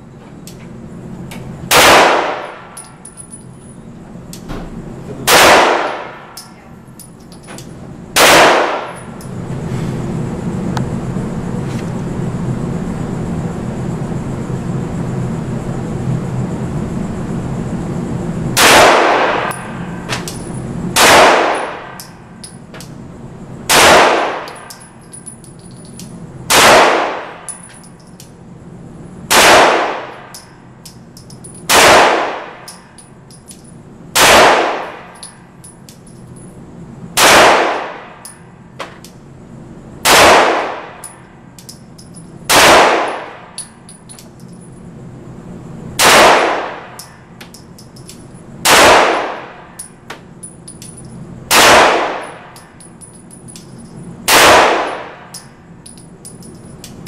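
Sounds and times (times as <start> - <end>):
pistol shots: 1.7 - 2.7, 5.2 - 6.4, 8.2 - 9.0, 18.6 - 20.3, 21.0 - 22.1, 23.7 - 24.8, 26.5 - 27.5, 29.3 - 30.4, 31.7 - 32.7, 34.2 - 35.2, 37.2 - 38.2, 40.0 - 41.1, 42.5 - 43.6, 46.0 - 47.1, 48.6 - 49.8, 51.5 - 52.6, 54.3 - 55.4.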